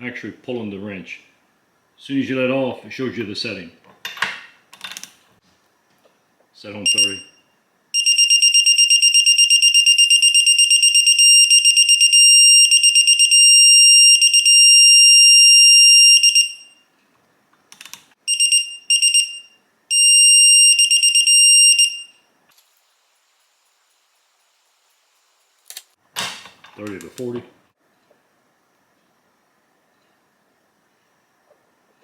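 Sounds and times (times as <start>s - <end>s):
high-pitched alarm beeping: 6.9s - 7.4s, 8.0s - 16.8s, 18.3s - 22.2s.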